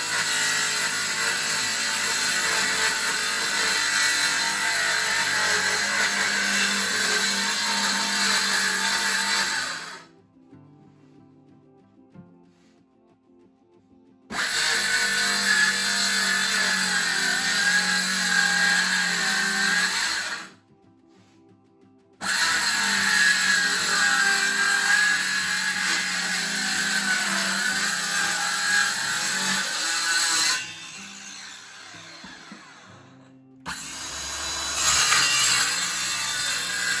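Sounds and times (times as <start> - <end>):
power tool running: 0.0 - 10.1, 14.3 - 20.6, 22.2 - 37.0.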